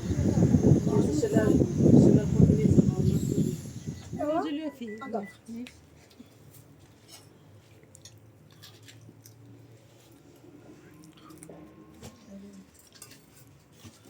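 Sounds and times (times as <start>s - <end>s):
low steady hum: 0.0s - 5.0s.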